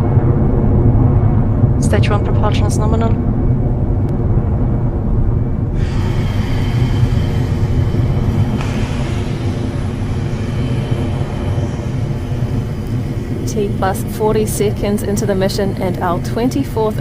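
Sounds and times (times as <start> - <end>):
rocket engine rumble: 0.0 - 17.0
bright hiss: 5.8 - 16.6.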